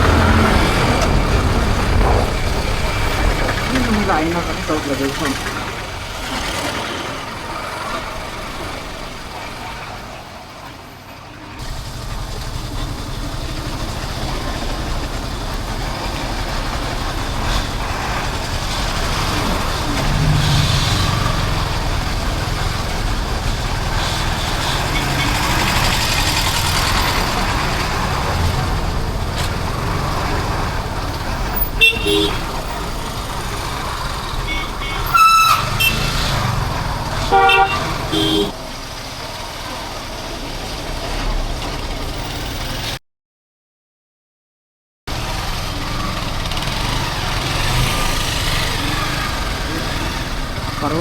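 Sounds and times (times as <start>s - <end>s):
vehicle engine and rushing air: 0.0s - 9.3s.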